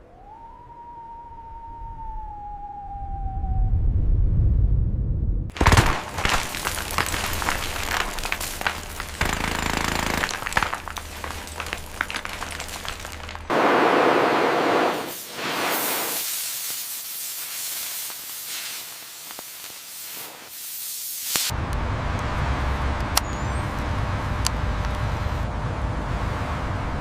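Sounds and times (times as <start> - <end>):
low hum: 0.0 - 6.0
loud hiss: 13.5 - 21.5.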